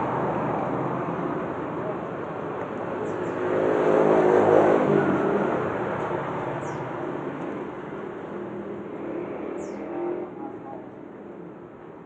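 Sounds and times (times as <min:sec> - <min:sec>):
vehicle engine passing by: 0:03.0 - 0:06.4.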